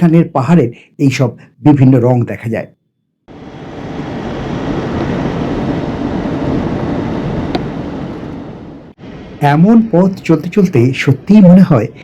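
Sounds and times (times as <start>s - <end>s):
car road and engine noise: 3.3s - 9.4s.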